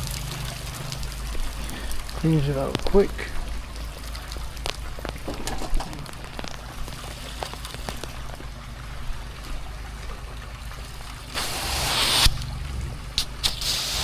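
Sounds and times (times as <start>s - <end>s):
engine humming: 0.0s - 13.6s
water splashing and dripping: 0.0s - 14.0s.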